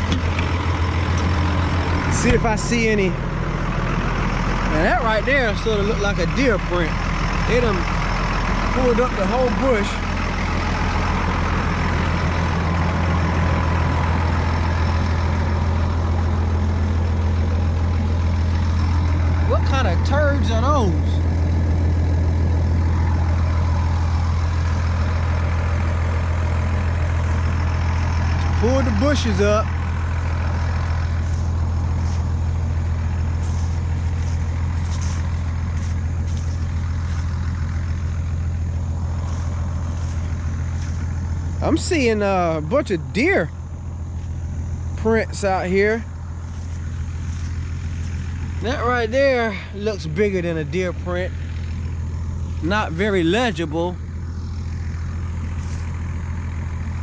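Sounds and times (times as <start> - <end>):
tractor engine droning: 0.0 - 57.0.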